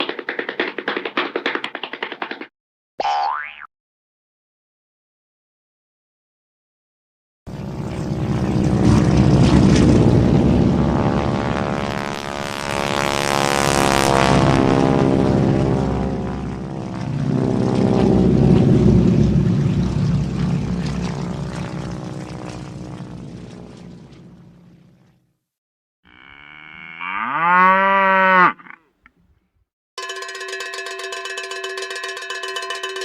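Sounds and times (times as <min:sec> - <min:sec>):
propeller airplane engine drone: 0:07.5 - 0:25.4.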